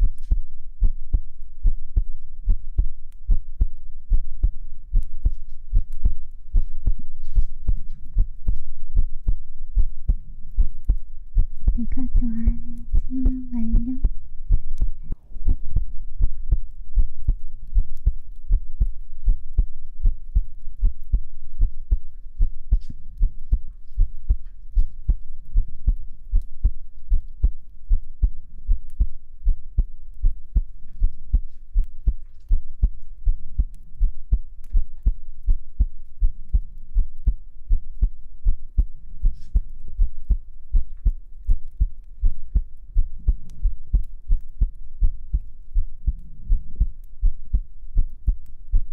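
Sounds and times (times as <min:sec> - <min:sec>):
heartbeat thumps: 0:00.0 - 0:48.9.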